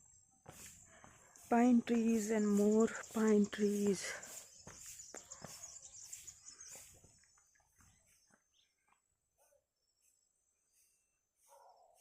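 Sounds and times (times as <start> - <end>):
faint footsteps: 0.4 - 9.1
faint bird chirps: 2.1 - 12.0.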